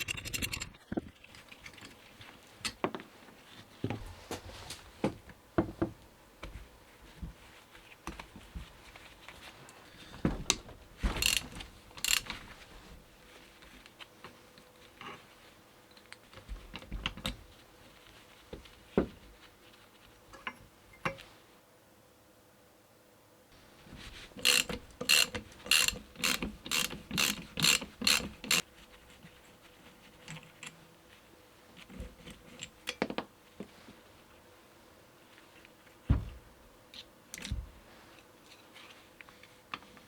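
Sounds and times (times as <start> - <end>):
ratchet wrench clicking: 11.2 - 11.4, 12.0 - 12.2, 24.4 - 28.6.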